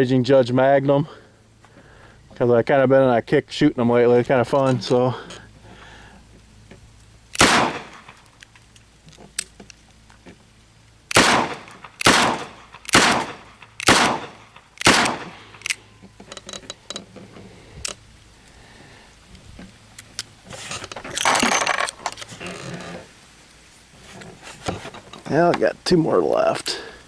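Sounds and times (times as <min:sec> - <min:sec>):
revolver gunshots: 0:07.4 - 0:08.3, 0:11.1 - 0:15.8.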